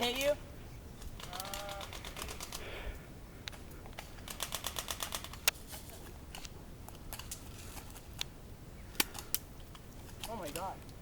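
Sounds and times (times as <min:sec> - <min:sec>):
airsoft gun automatic bursts: 0:01.2 - 0:02.7, 0:04.2 - 0:05.5.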